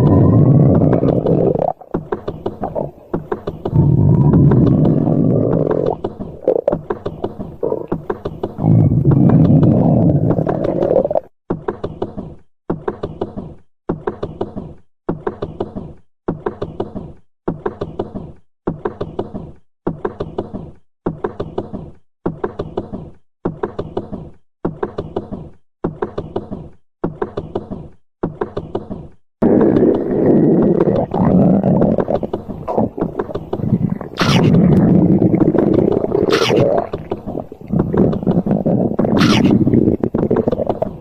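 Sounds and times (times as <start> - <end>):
rabbit stomach gurgling pops: 0.0 - 14.6, 29.4 - 41.0.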